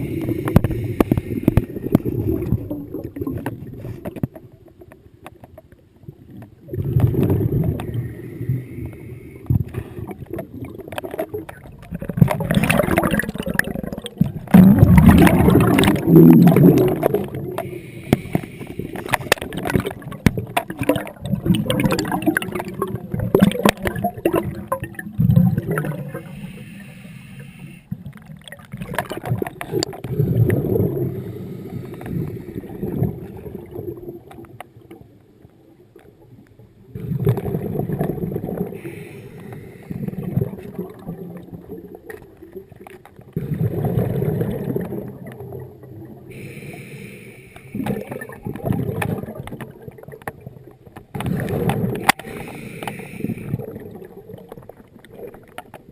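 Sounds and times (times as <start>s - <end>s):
underwater bubbles gurgling: 0.0s - 55.9s
sharp clicks and bubble pops: 0.2s - 5.7s, 6.4s - 8.0s, 9.4s - 26.3s, 27.9s - 31.2s, 47.6s - 55.9s.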